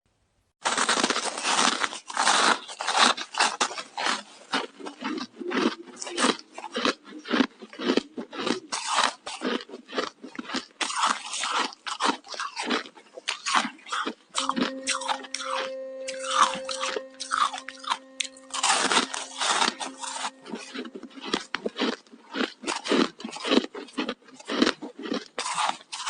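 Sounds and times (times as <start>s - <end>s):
ice being crunched: 0.6s - 4.4s.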